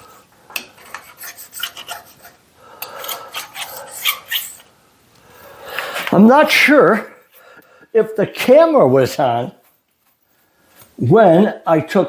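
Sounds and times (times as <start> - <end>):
file scraping metal edge: 0.0 - 4.7.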